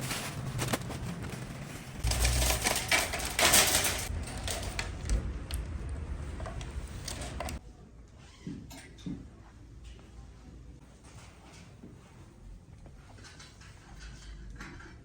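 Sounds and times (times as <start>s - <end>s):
rustling: 0.0s - 4.1s
groceries clattering: 0.0s - 5.2s.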